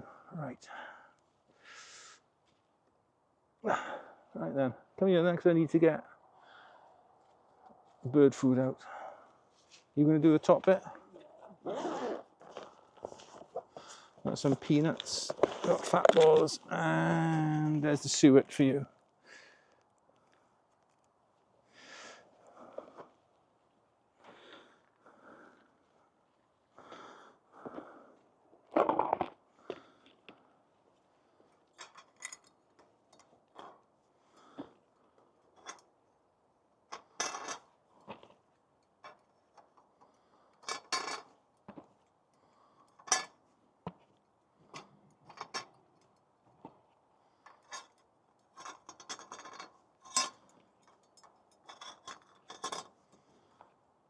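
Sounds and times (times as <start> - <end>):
bird feeders clinking and rattling: 31.8 - 33.8, 36.9 - 37.7, 40.6 - 41.3, 44.7 - 45.8, 47.4 - 53.0.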